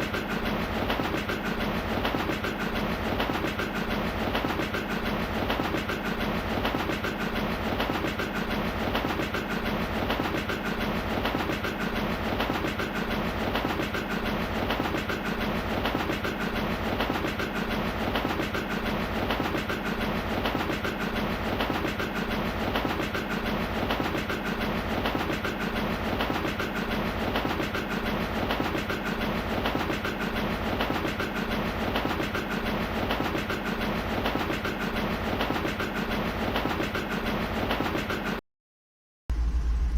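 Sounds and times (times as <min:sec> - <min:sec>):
train wheels clicking on rails: 0:00.0 - 0:38.4.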